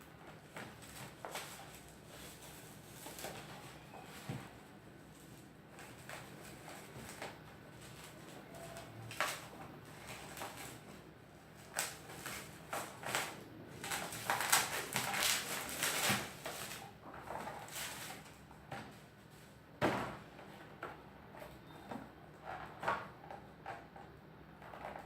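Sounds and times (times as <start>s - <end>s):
packaging rustling and scraping: 0.2s - 19.4s.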